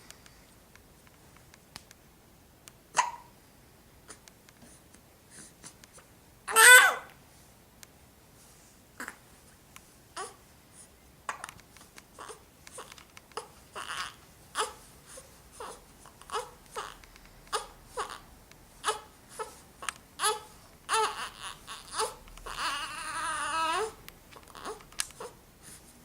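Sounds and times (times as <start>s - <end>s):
baby hiccuping: 2.9s - 3.3s
baby crying: 6.5s - 7.1s, 12.2s - 14.8s, 15.6s - 18.2s, 18.8s - 19.6s, 20.2s - 25.4s.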